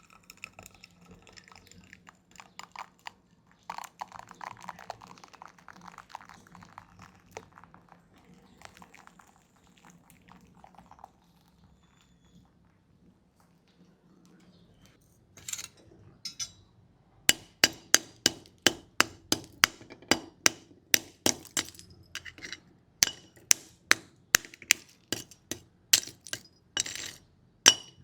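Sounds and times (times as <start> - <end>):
hammer tapping on metal: 16.3 - 16.6, 17.3 - 28.0.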